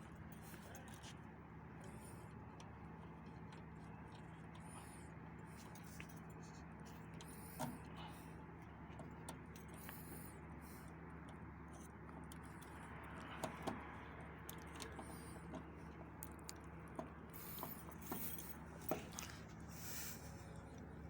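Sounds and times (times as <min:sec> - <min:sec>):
steady low hum: 0:00.0 - 0:21.0
clicks and taps on wiring: 0:11.2 - 0:19.5.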